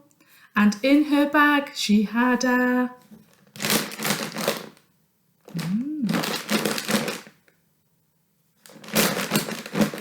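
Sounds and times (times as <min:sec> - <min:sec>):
crisp bag crunching and crinkling: 0:03.3 - 0:04.8, 0:05.5 - 0:07.4, 0:08.7 - 0:10.0.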